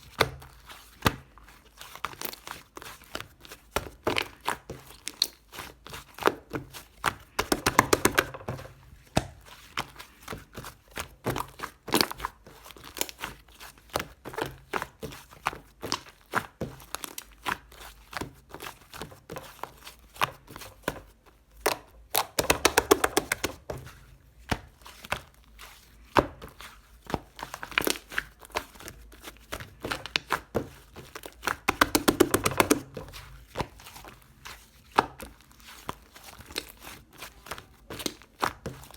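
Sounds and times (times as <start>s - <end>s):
slime clicking and popping: 21.7s - 23.6s, 31.6s - 33.0s.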